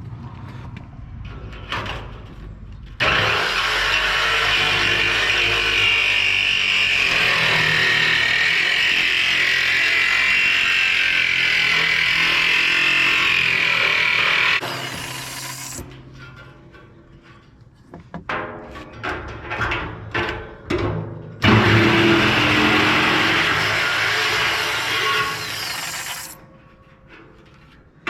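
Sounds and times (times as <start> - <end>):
power tool on steel drum: 3.0 - 15.9, 21.4 - 26.4.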